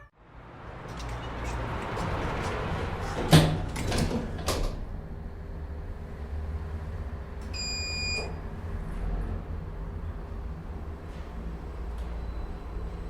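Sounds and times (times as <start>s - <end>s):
city ambience low rumble: 0.0s - 13.0s.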